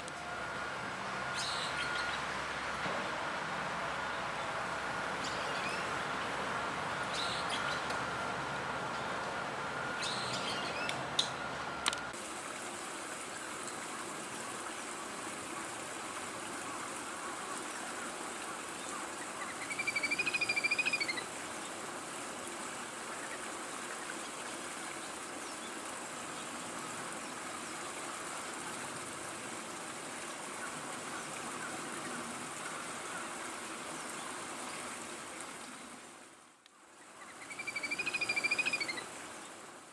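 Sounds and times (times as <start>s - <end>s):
flowing water rushing: 0.0s - 39.9s
warbling bird chirp: 9.8s - 11.0s, 37.3s - 39.0s.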